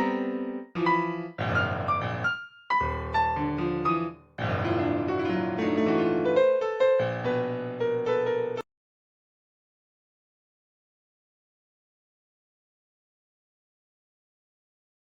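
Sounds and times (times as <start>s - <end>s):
piano chords: 0.0s - 8.6s.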